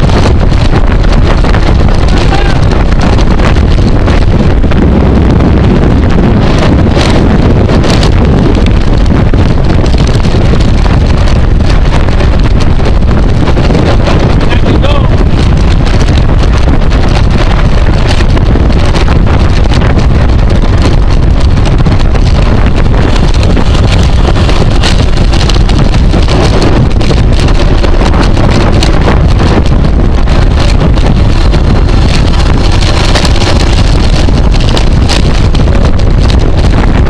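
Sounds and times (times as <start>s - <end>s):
wind buffeting microphone: 0.0s - 37.0s.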